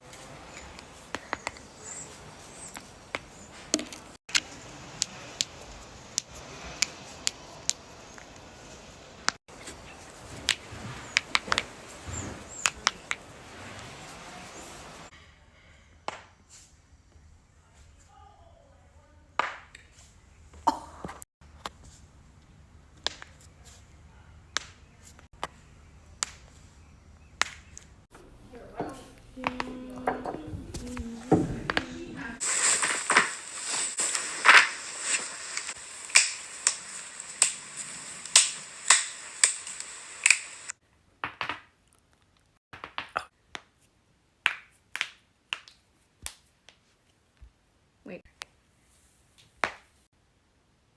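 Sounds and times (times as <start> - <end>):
joints cracking: 32.6 - 40.7.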